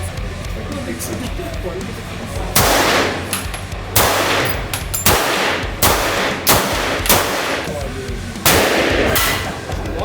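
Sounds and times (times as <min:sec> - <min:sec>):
single gunshots with ringing tail: 0:02.6 - 0:03.3, 0:04.0 - 0:07.7, 0:08.5 - 0:09.6.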